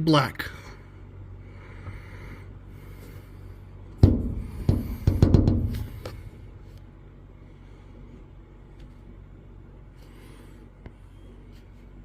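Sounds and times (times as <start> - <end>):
sharp knocks and rattles: 4.0 - 6.4.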